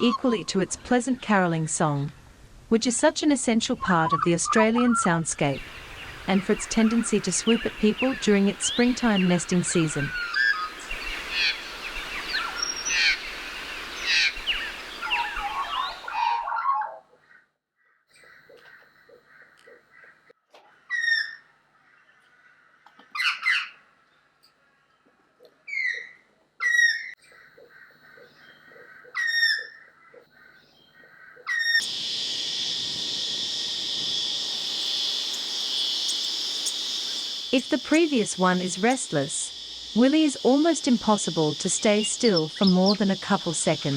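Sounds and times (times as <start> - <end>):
magpie carolling: 0.0 - 1.2, 3.8 - 17.0, 31.4 - 43.9
faint bird chirping: 3.7 - 16.6, 25.7 - 43.9
high-pitched insect chorus: 5.4 - 16.2, 31.7 - 43.9.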